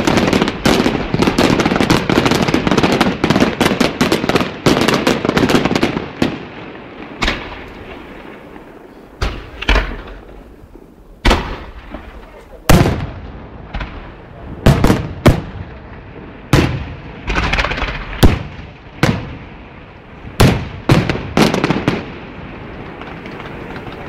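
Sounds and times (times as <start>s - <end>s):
fireworks bangs echoing: 0.0s - 24.0s
fireworks crackling: 0.0s - 24.0s.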